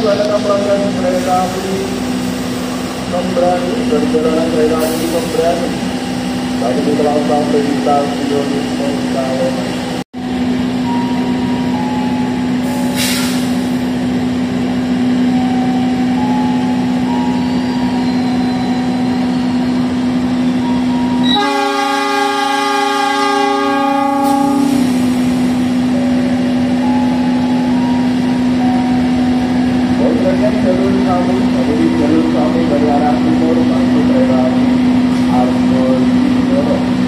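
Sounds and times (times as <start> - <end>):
diesel locomotive engine humming: 0.0 - 37.0
locomotive horn blast: 21.2 - 25.0.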